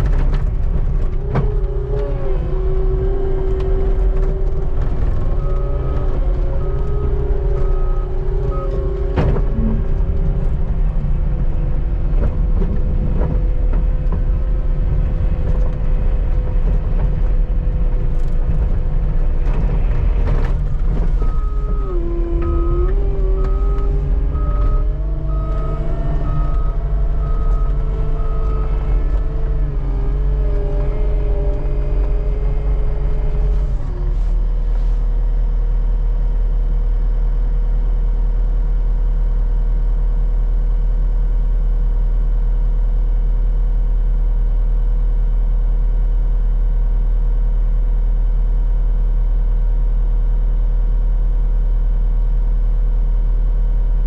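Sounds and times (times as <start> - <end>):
skid steer engine working: 0.0 - 54.0
backup alarm beeping: 5.2 - 9.8, 21.2 - 29.8.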